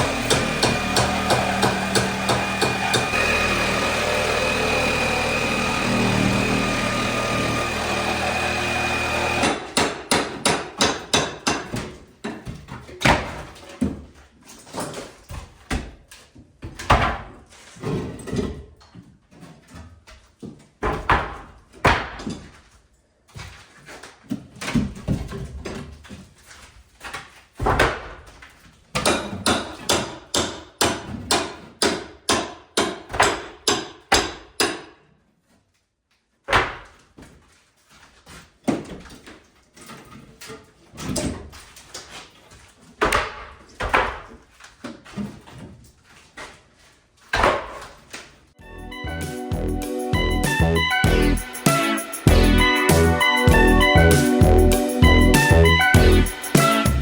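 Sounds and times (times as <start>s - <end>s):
hand tools striking plaster: 0.0s - 22.7s, 23.3s - 35.2s, 38.0s - 48.3s.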